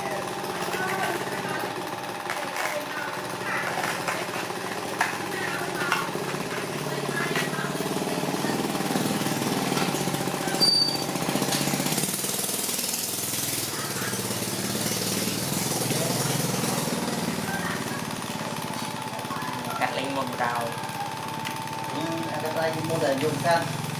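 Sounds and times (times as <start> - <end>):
motorized tool pulsing: 0.0 - 23.9
brief high squeal: 10.6 - 11.0.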